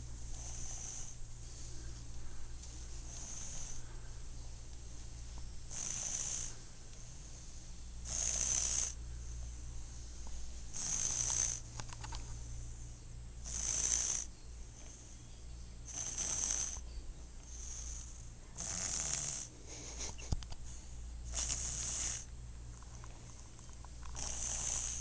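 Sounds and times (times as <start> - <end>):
low steady hum: 0.0 - 25.0
snoring: 0.3 - 1.2, 3.0 - 3.9, 5.7 - 6.6, 8.0 - 9.0, 10.7 - 11.7, 13.4 - 15.2, 15.8 - 16.8, 17.4 - 19.5, 21.2 - 22.3, 24.0 - 25.0.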